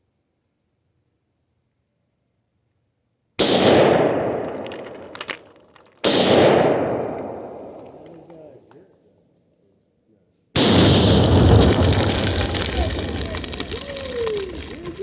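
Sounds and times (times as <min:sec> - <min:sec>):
rifle shots echoing: 0:03.4 - 0:08.3, 0:10.6 - 0:15.0.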